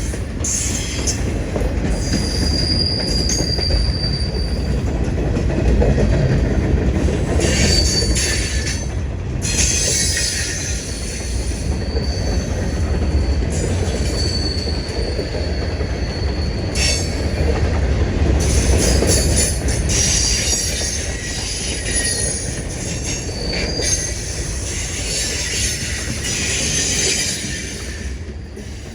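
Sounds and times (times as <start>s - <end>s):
train rumbling on rails: 0.0s - 28.9s
high-pitched wheel squeals: 2.0s - 4.7s, 7.4s - 17.4s, 18.5s - 28.9s.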